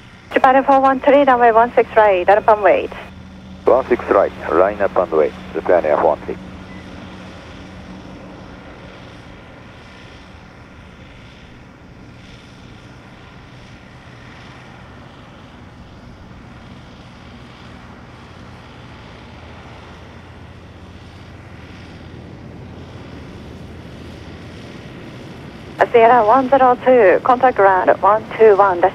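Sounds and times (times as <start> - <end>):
jet airliner engines running: 0.0 - 28.9.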